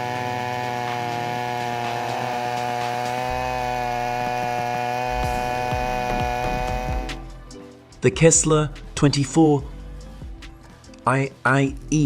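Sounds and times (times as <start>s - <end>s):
chainsaw engine running: 0.0s - 7.5s.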